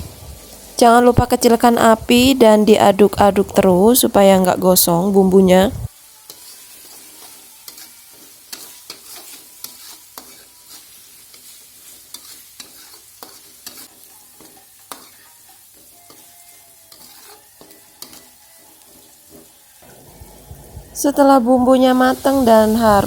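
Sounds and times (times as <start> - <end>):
spice paste sizzling in oil: 0.0 - 23.0
spatula scraping a pan: 5.9 - 20.6.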